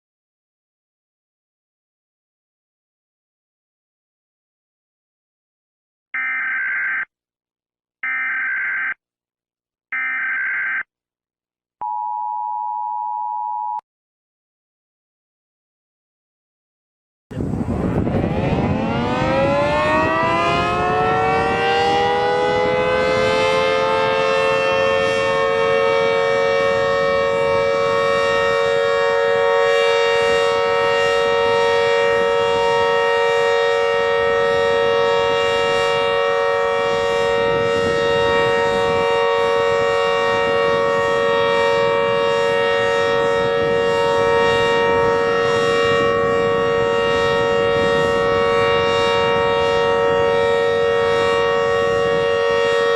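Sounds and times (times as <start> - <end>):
outdoor warning siren: 6.2 - 7.1, 8.0 - 9.0, 9.9 - 10.9, 17.3 - 52.9.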